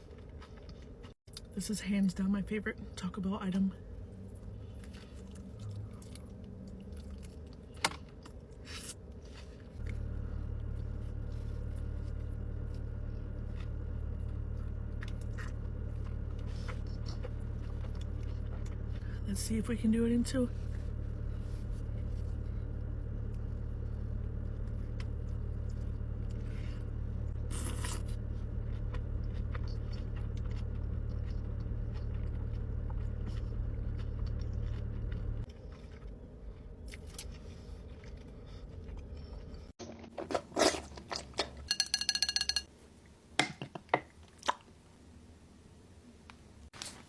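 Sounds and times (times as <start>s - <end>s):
person chewing food: 0.0s - 1.2s, 4.2s - 19.2s, 20.6s - 42.6s
steady low hum: 0.0s - 43.4s
utensils clinking: 41.6s - 42.7s.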